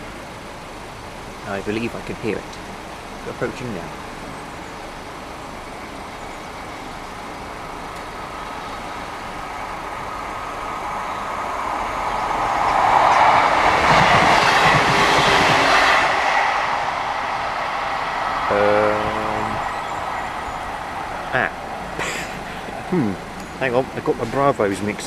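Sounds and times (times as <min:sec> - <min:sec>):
train wheels rumbling on rails: 0:08.0 - 0:25.0.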